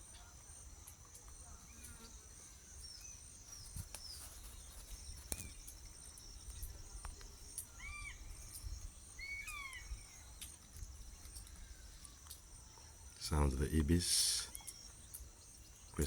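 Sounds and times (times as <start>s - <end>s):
birds whistling: 7.6s - 10.4s, 14.1s - 16.0s.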